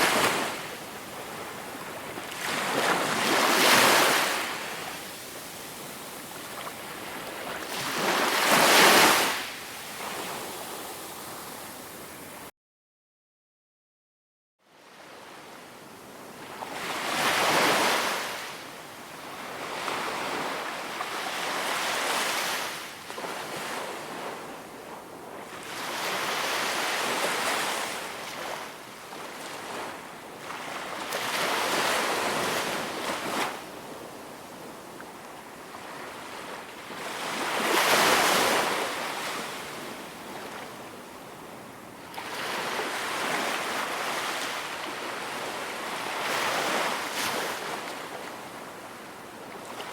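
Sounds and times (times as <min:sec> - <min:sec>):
waves breaking on beach: 0:00.0 - 0:12.5, 0:35.7 - 0:41.0, 0:42.0 - 0:49.9.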